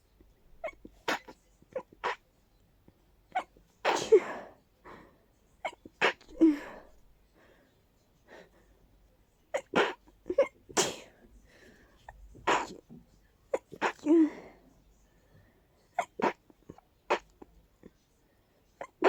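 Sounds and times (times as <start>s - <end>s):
person sneezing: 3.8s - 4.5s, 9.6s - 11.2s, 12.5s - 12.8s, 13.6s - 14.4s.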